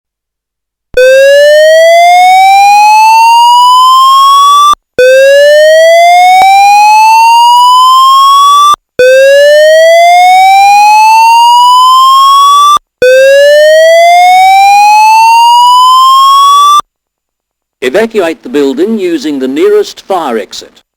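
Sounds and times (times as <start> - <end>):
fire alarm sweeping tone: 1.0 - 16.8.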